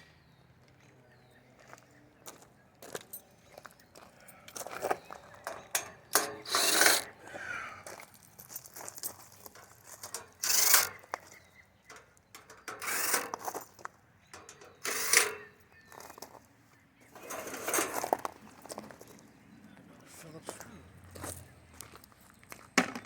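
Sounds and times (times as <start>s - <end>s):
metal parts scraping and rattling: 5.4s - 7.1s, 8.9s - 16.1s, 17.1s - 18.7s.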